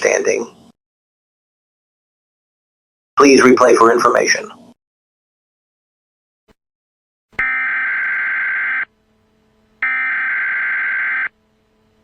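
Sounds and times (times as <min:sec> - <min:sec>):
buzzing alert tone bursts: 0:07.4 - 0:08.9, 0:09.8 - 0:11.3.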